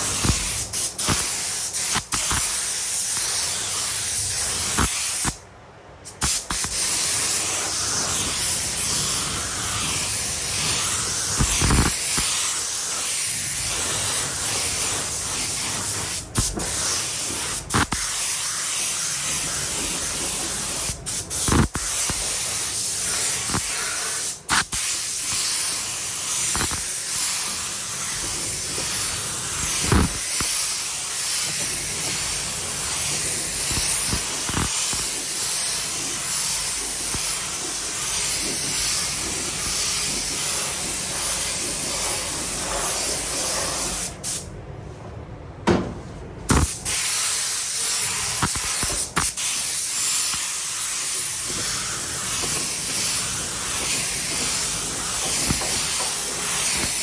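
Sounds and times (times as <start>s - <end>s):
paint spray gun hissing: 0.0s - 5.4s, 6.2s - 44.4s, 46.5s - 57.0s.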